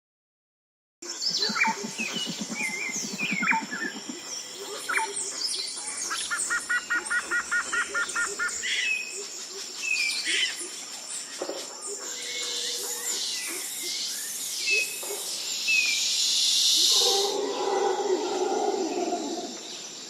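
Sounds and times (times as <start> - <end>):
high insect drone: 1.1 - 9.5
birds calling and chirping: 1.1 - 20.0
low fast pulsing call: 1.3 - 5.2.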